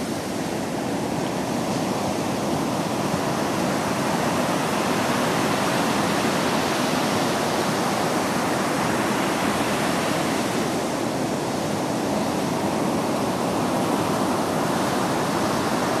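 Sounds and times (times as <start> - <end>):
ocean waves breaking: 0.0 - 16.0.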